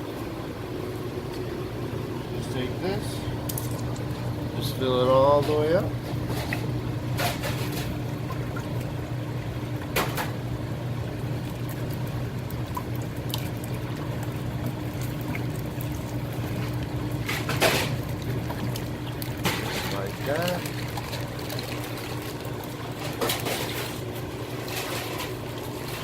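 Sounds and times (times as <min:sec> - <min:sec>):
low machine hum: 0:00.0 - 0:26.0
liquid pouring: 0:10.8 - 0:26.0.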